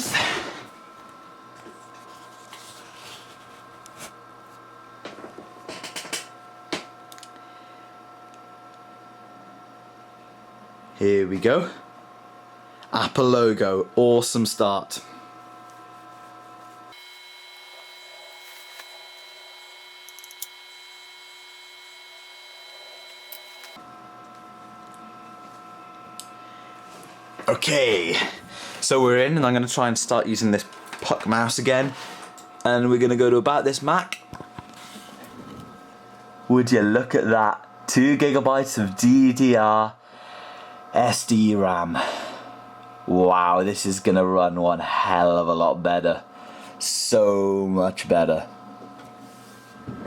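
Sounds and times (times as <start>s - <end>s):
computer fans and drives whirring: 0.0s - 50.0s
whining tones: 16.9s - 24.4s.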